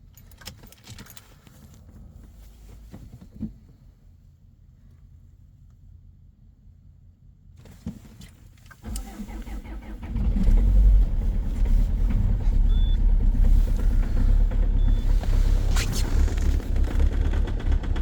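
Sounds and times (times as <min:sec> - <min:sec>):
starter cranking: 0:08.9 - 0:18.0
diesel engine knocking: 0:10.2 - 0:18.0.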